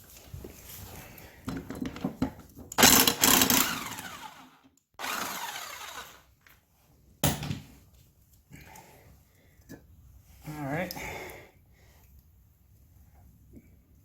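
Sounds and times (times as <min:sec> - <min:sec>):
impact wrench hammering: 0:02.8 - 0:04.4
motor winding down whine: 0:02.8 - 0:06.3.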